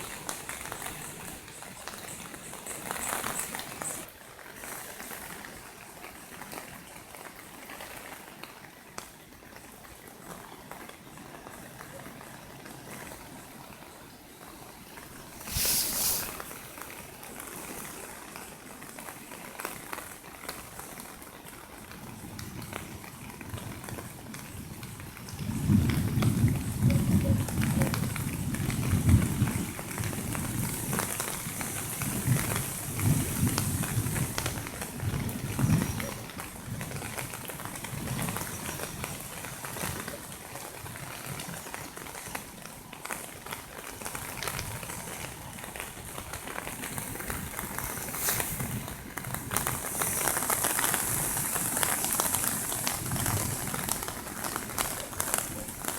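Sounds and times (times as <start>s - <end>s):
heavy rain hissing: 14.8s - 18.7s, 25.4s - 40.6s, 44.8s - 55.9s.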